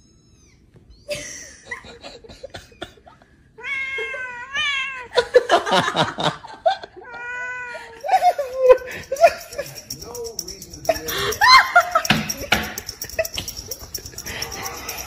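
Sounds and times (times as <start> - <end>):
cat meowing: 3.6 - 5.1, 7.0 - 7.9.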